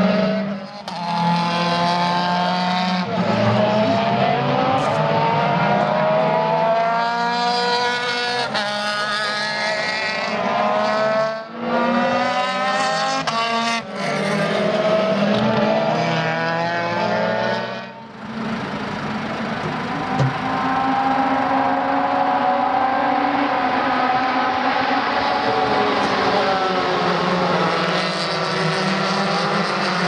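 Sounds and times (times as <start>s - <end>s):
race car engine revving: 0.0s - 30.0s.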